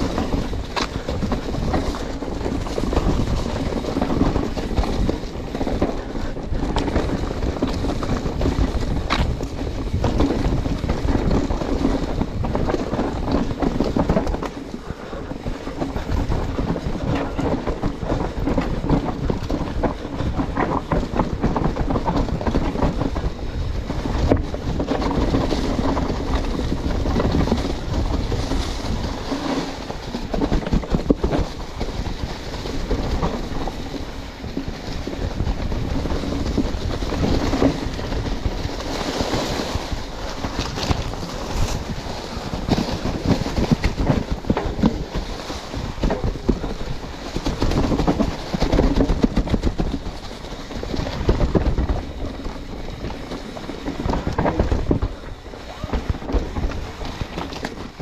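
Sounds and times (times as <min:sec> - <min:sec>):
bike rattling over rough ground: 0:00.0 - 0:58.0
bike tyres rolling: 0:00.0 - 0:58.0
wind buffeting microphone: 0:00.0 - 0:58.0.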